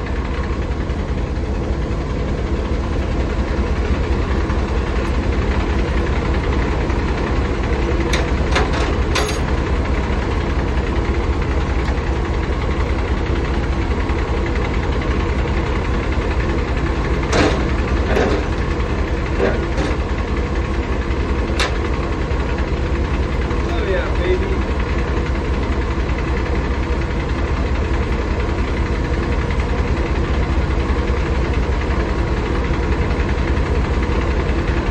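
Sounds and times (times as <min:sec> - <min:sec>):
diesel truck engine idling: 0:00.0 - 0:34.9
sharp clicks and clanks: 0:06.4 - 0:09.6, 0:17.2 - 0:20.2, 0:21.5 - 0:22.0.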